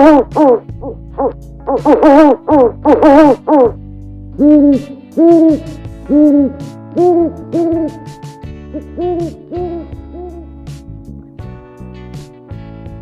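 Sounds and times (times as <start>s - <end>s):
owl hooting: 1.2s - 3.8s, 4.4s - 7.9s, 8.8s - 10.4s.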